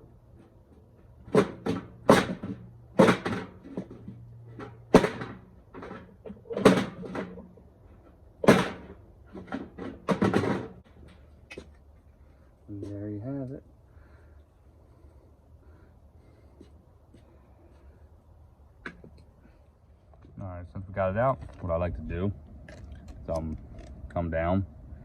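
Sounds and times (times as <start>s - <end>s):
sheet metal clanking and scraping: 1.2s - 11.2s.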